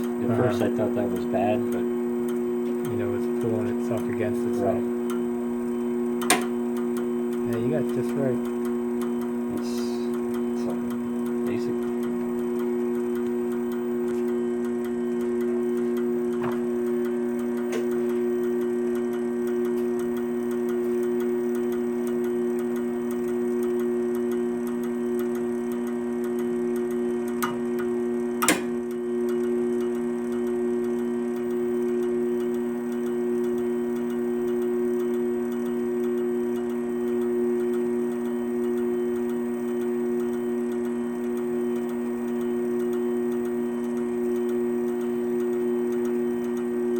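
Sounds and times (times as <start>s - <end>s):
light constant ticking: 0.0s - 27.9s, 28.9s - 46.9s
wire-spooling machine humming: 0.0s - 46.9s
reversing switch clicks: 6.2s - 31.6s.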